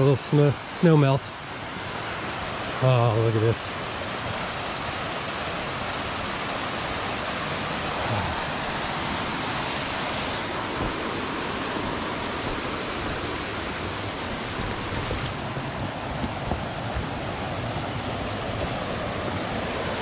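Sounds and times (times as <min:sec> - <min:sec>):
creek rushing: 0:00.0 - 0:20.0.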